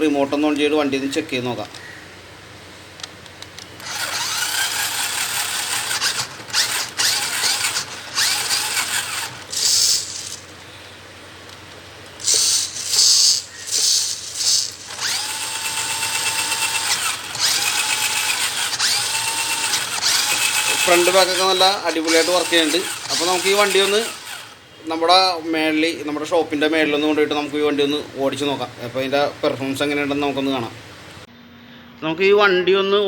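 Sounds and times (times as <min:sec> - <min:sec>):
toy truck motor whirring: 0:03.8 - 0:10.7, 0:12.2 - 0:24.6.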